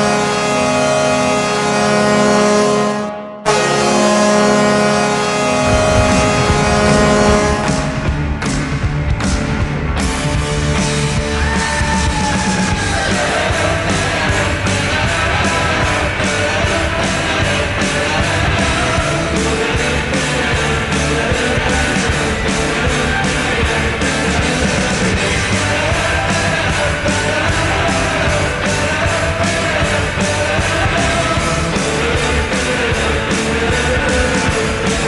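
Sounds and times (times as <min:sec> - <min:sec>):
loud rock song: 0:03.4 - 0:35.0.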